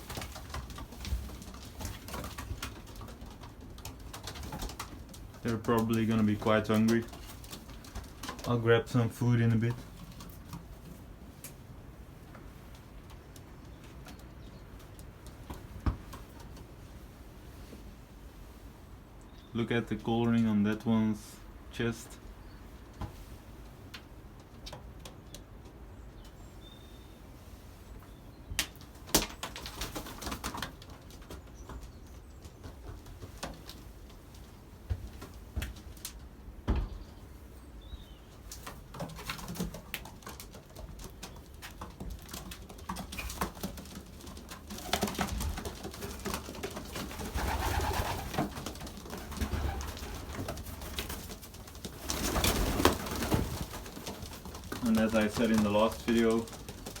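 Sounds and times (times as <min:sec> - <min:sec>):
wing flaps: 0:42.9 - 0:57.0
pigeons cooing: 0:44.7 - 0:57.0.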